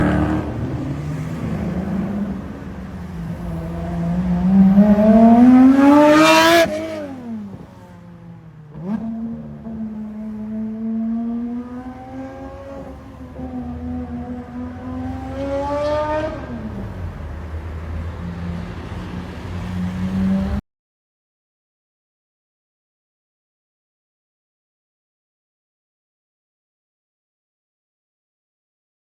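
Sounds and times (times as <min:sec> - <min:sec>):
car engine revving: 0:00.0 - 0:07.9, 0:08.7 - 0:20.6.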